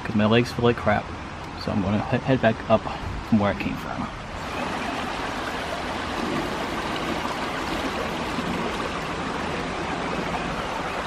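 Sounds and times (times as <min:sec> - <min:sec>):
river current rushing: 0:04.2 - 0:11.0.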